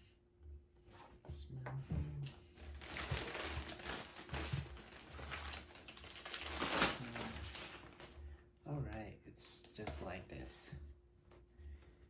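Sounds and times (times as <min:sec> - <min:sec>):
packaging crinkling and rustling: 0:02.6 - 0:08.2.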